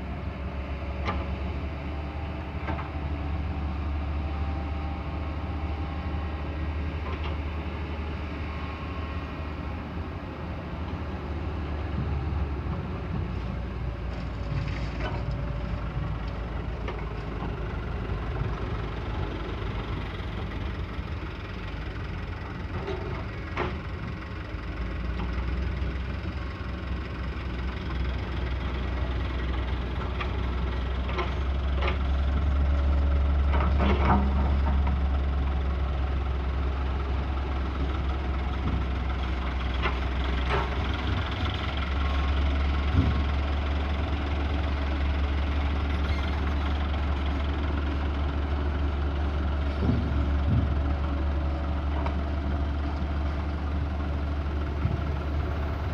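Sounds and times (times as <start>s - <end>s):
heavy diesel engine rumbling: 0.0s - 55.9s.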